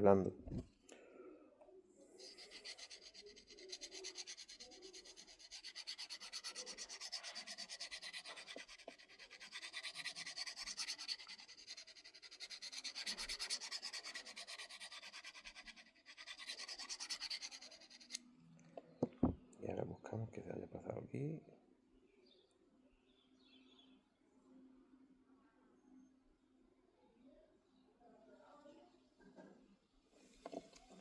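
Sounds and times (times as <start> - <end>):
knife scraping sharpening rod: 2.2 - 15.3, 16.1 - 18.2.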